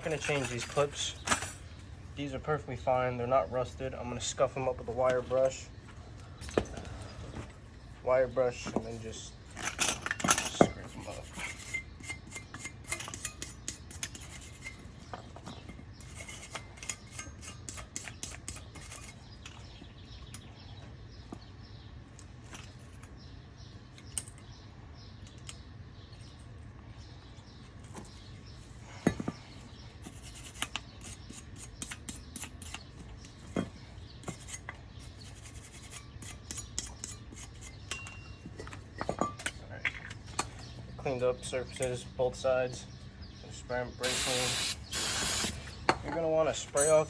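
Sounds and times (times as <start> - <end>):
wire brush scrubbing metal: 34.2 - 37.9, 44.0 - 45.7.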